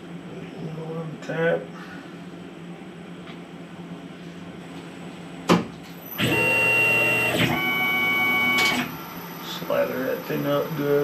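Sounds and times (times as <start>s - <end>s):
electric motor whining: 6.0s - 10.4s.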